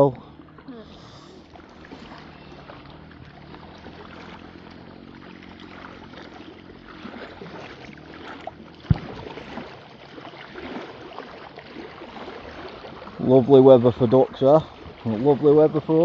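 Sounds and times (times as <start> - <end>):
jet ski engine running: 0.0 - 16.0
water splashing: 0.0 - 16.0
sharp thump: 8.8 - 9.5.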